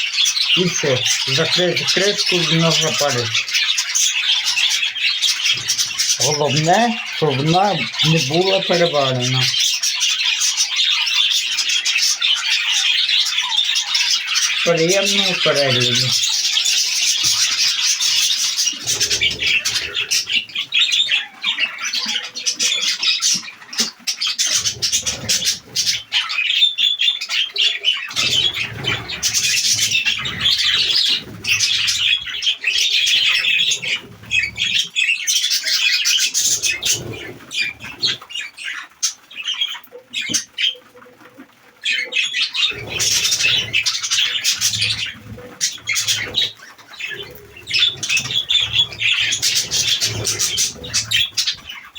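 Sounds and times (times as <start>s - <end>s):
parrots chattering and squawking: 0.0s - 51.9s
wings flapping: 14.4s - 21.8s, 28.1s - 41.7s, 42.3s - 51.9s.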